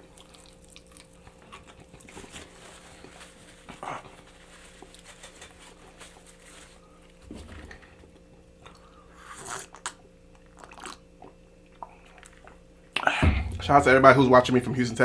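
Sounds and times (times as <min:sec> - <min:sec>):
chewing and mouth sounds: 0:00.0 - 0:02.6, 0:08.6 - 0:13.1.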